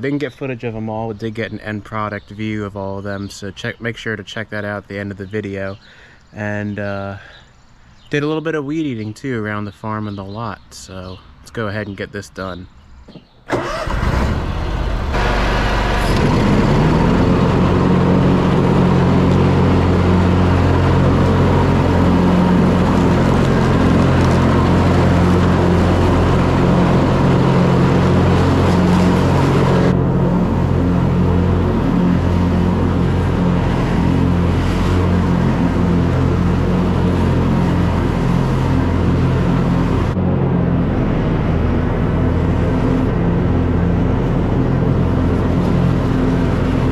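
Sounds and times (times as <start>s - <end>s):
lawn mower engine running: 13.5s - 46.9s.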